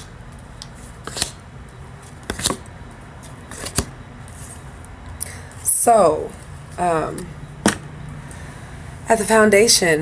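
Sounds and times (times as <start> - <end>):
cards snapping on table: 0.0 - 1.4, 2.2 - 2.6.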